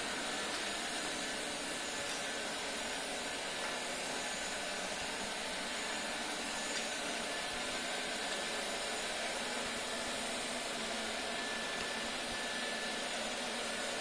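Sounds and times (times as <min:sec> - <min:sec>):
robot vacuum cleaner whirring: 0:00.0 - 0:14.0.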